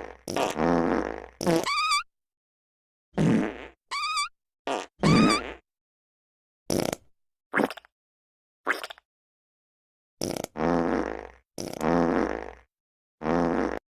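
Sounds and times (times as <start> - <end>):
fart sound effects: 0.0 - 2.0, 3.2 - 3.8, 4.7 - 5.6, 6.7 - 7.0, 10.2 - 12.6, 13.2 - 13.8.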